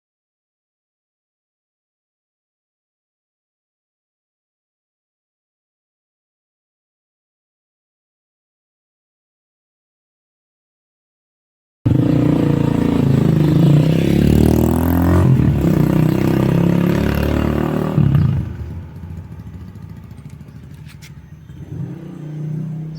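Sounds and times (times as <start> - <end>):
motorcycle engine revving: 11.9 - 22.9.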